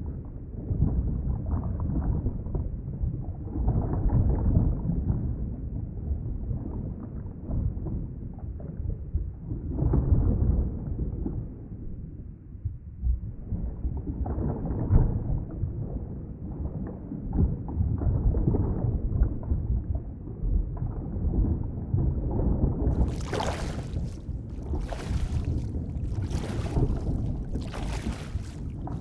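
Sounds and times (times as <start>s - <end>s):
rushing water surges: 23.0s - 29.0s
underwater rumbling and gurgling: 23.0s - 29.0s.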